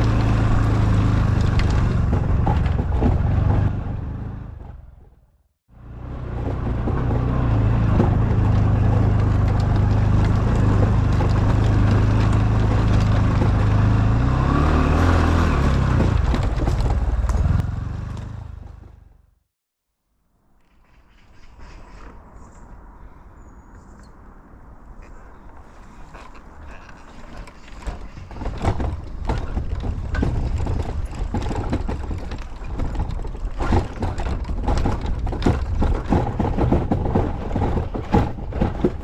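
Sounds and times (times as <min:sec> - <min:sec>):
small motorcycle engine running: 0:00.0 - 0:04.8, 0:05.8 - 0:19.3
wind and road noise: 0:00.0 - 0:19.4, 0:20.2 - 0:39.0.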